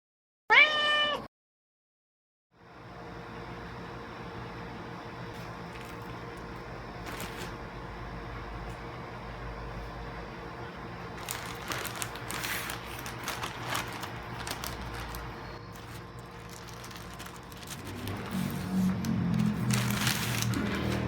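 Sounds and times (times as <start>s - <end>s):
packaging clicks and crinkles: 5.7s - 7.6s, 11.1s - 21.0s.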